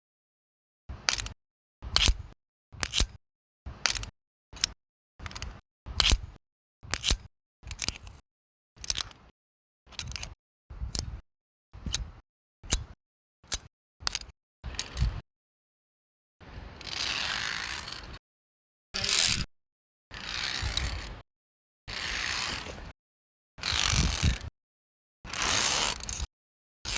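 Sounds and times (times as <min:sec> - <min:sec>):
carabiners clicking and clinking: 0:01.1 - 0:02.2, 0:02.8 - 0:03.1, 0:03.8 - 0:06.2, 0:06.9 - 0:08.2, 0:08.8 - 0:09.1, 0:09.9 - 0:10.4, 0:13.5 - 0:15.1.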